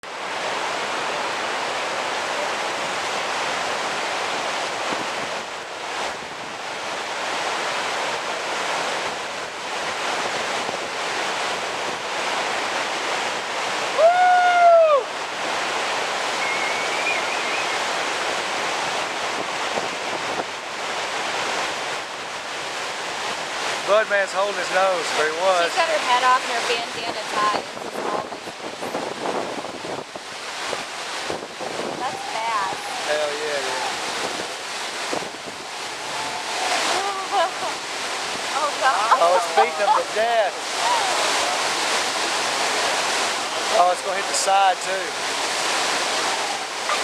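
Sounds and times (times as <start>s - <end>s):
whitewater roaring: 0.0s - 47.0s
person whooping: 14.0s - 15.1s, 32.0s - 33.1s.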